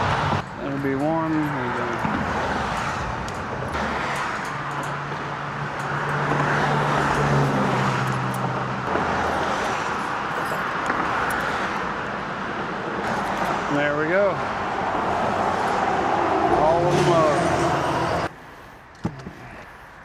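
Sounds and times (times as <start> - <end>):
road traffic: 0.0 - 20.0.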